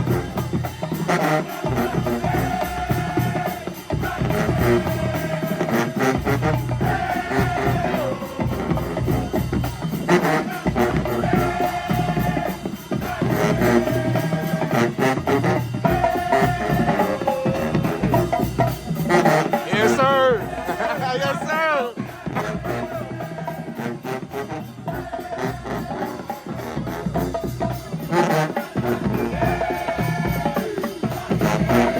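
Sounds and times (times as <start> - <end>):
steady drum beat: 0.0 - 31.9.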